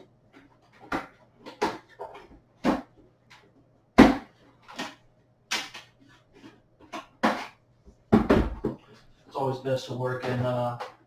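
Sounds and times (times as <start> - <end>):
boxes knocking and thudding: 0.7 - 3.0, 4.0 - 5.9, 6.8 - 8.9.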